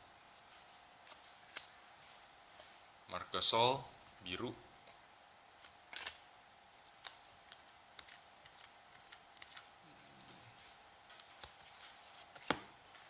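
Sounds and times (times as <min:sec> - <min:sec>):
trading cards clicking and snapping: 0:07.0 - 0:10.3.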